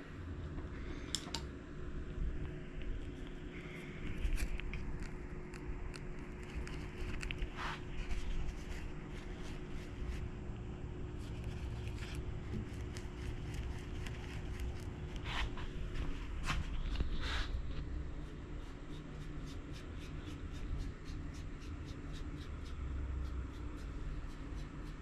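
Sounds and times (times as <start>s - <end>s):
paintbrush scratching on metal: 18.2s - 25.0s.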